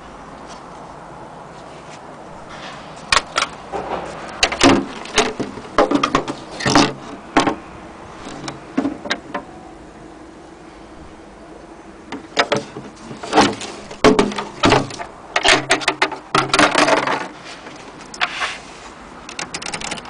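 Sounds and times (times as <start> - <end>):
manual typewriter clattering: 19.3 - 20.0.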